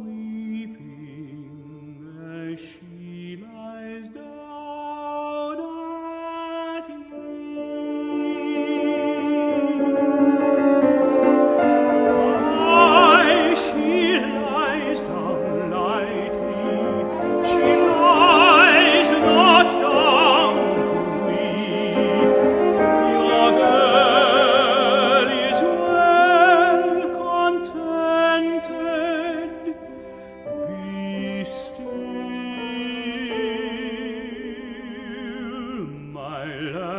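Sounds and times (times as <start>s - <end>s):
operatic solo singing: 0.0s - 36.9s
instrumental accompaniment: 7.5s - 35.6s.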